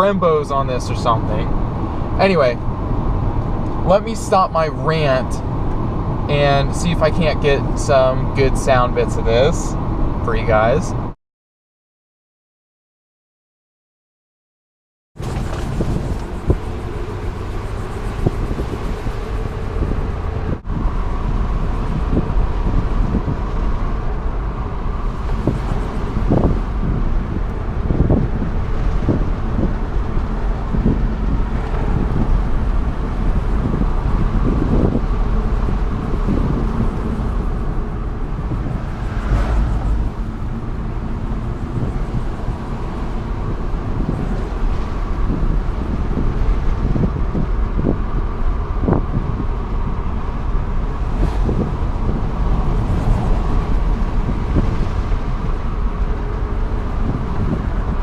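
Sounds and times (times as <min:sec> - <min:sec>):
car road noise inside cabin: 0:00.0 - 0:11.2, 0:15.2 - 0:58.0
wind noise: 0:15.2 - 0:58.0.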